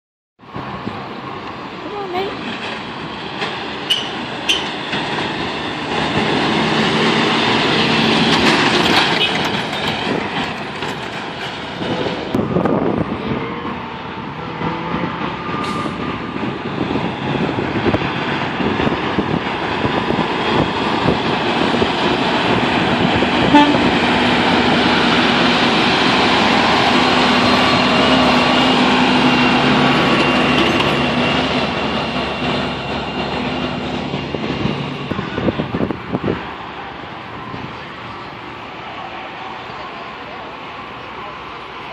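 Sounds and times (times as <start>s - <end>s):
heavy trucks passing: 0.4s - 41.9s
truck air horn chord: 23.4s - 24.0s.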